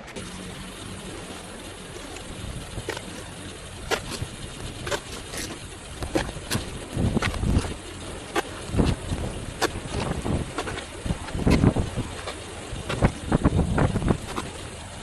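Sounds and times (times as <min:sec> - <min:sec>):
wind noise on microphone: 0:03.9 - 0:07.9, 0:08.6 - 0:15.0.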